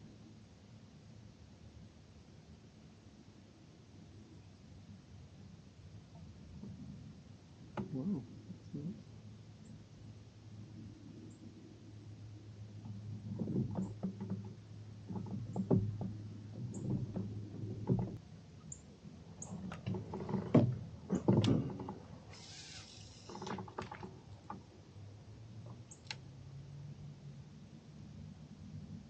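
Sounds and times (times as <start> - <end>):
low steady hum: 0.0 - 29.0
gear knocking on kayak hull: 13.2 - 18.2, 19.5 - 22.1
brief hiss: 22.3 - 23.3.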